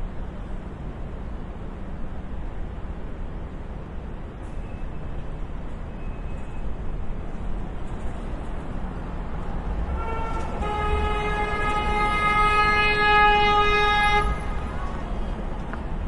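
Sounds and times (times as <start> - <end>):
city traffic rumble: 0.0 - 16.0
vehicle horn blast: 9.9 - 14.9.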